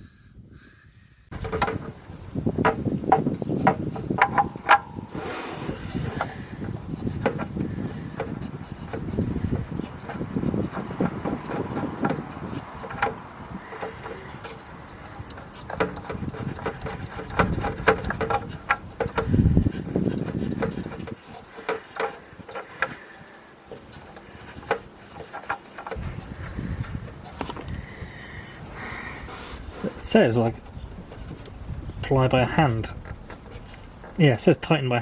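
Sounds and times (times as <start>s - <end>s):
metal clicks and knocks: 1.3s - 2.0s, 2.6s - 5.2s, 6.0s - 27.8s
dull thumps: 2.6s - 23.0s
rubbing and scraping: 2.6s - 34.4s.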